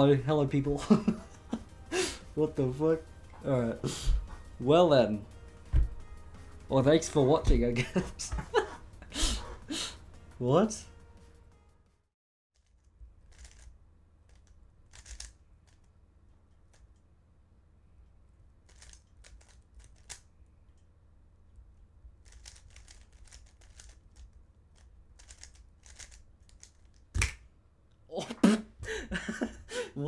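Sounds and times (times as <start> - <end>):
plastic puzzle cube clicking: 12.7 - 15.9, 18.6 - 20.3, 22.2 - 27.4.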